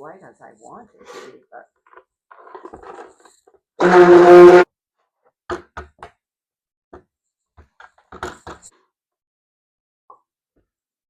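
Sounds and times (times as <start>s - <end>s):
stick blender motor hum: 3.8s - 4.6s.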